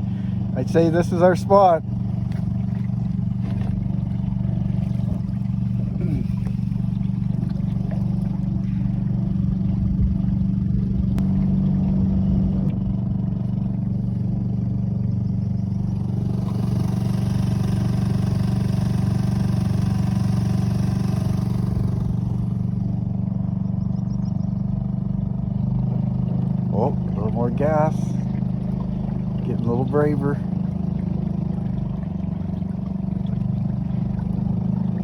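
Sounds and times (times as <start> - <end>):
small outboard motor running: 0.0 - 35.0.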